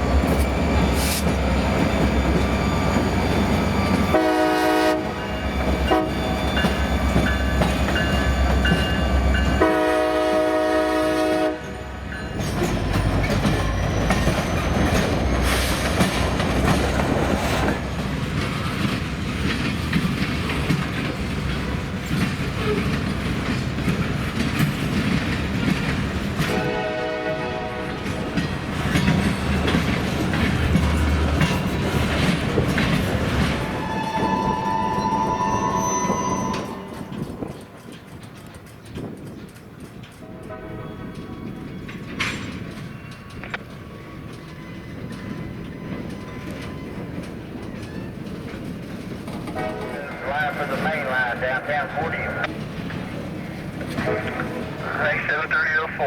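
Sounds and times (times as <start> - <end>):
train rumble and wheel clatter: 0.0 - 56.0
train air horn blasts: 4.1 - 6.2, 9.6 - 12.0, 26.5 - 28.0, 33.7 - 37.6, 40.2 - 41.2, 49.5 - 50.2.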